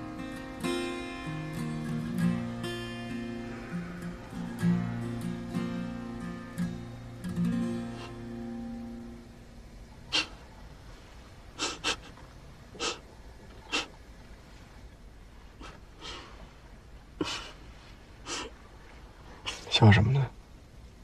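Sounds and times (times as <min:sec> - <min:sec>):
soft acoustic guitar music: 0:00.0 - 0:12.2.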